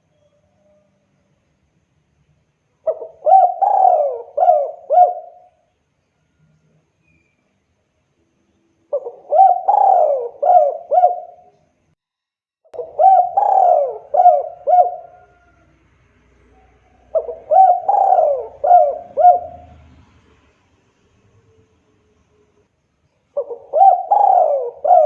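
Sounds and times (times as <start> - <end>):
dove cooing: 2.8 - 5.6, 8.9 - 11.6, 12.8 - 15.7, 16.4 - 19.9, 23.4 - 25.0.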